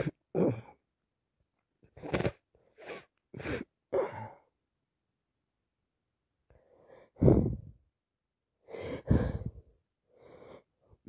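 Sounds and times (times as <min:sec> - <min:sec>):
gasping breath intakes: 0:06.5 - 0:07.8, 0:08.7 - 0:10.7.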